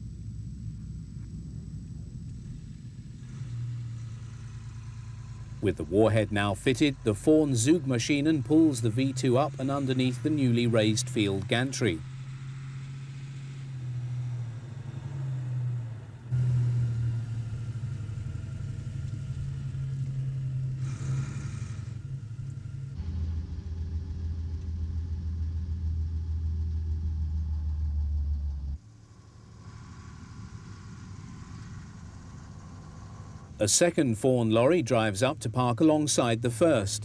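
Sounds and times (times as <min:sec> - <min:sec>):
heavy lorry engine humming: 0:00.0 - 0:37.0.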